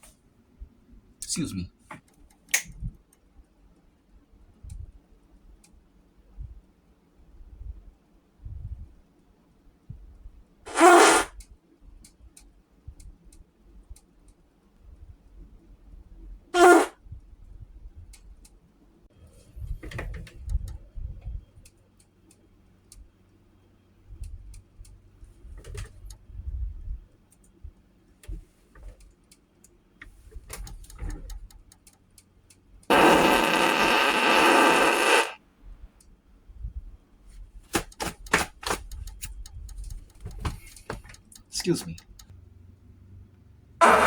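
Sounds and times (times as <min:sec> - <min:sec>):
loud noisy sound: 0:32.9 - 0:35.4.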